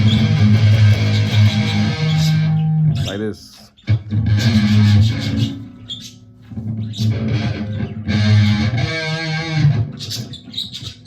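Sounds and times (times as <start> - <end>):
electric guitar power chord: 0.0 - 2.9, 7.1 - 9.9.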